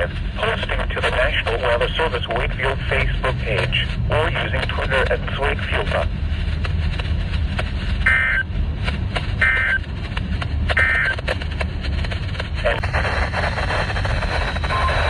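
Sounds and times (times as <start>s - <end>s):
radio static with crackles: 0.0s - 15.0s
emergency alert data tones: 8.1s - 8.5s, 9.4s - 9.8s, 10.8s - 11.2s, 12.6s - 15.0s.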